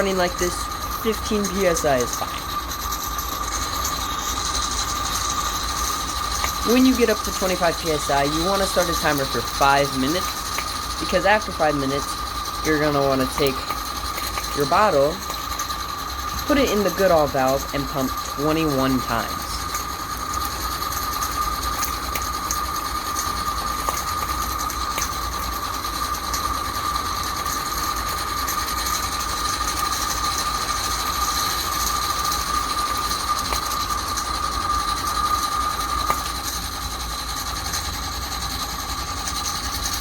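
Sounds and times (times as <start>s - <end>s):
steady high tone: 0.0s - 13.8s, 14.4s - 15.4s, 16.3s - 19.8s
steam hissing: 0.0s - 40.0s.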